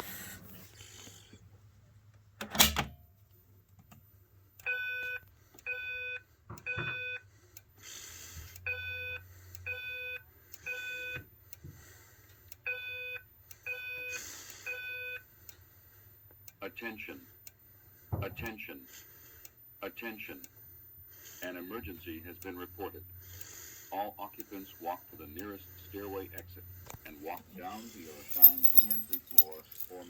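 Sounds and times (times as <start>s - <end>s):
fire alarm buzzy beeps: 4.6s - 7.3s, 8.6s - 11.5s, 12.6s - 15.3s.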